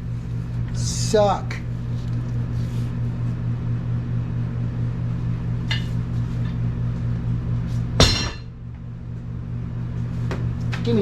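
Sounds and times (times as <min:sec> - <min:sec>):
machine electrical hum: 0:00.0 - 0:11.0
sharp metallic clank: 0:08.0 - 0:08.5.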